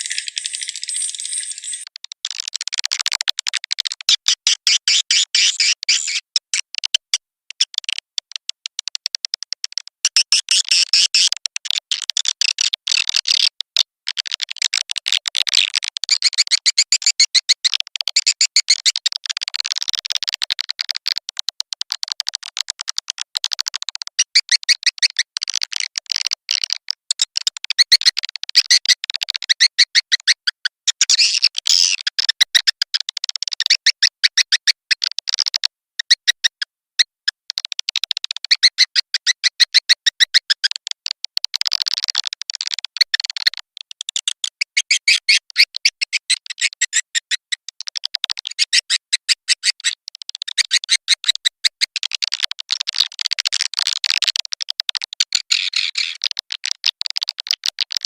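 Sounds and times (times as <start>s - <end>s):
rapid twittering bird chirps: 4.6s - 6.2s.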